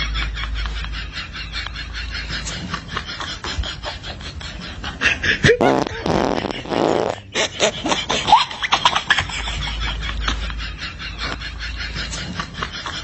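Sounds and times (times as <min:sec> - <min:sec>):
raspy fart noise: 0:05.6 - 0:07.5.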